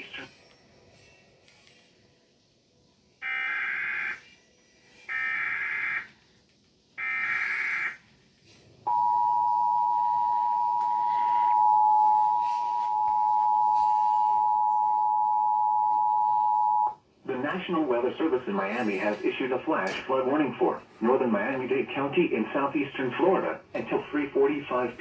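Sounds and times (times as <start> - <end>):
two-tone attention signal: 8.9 - 17.0.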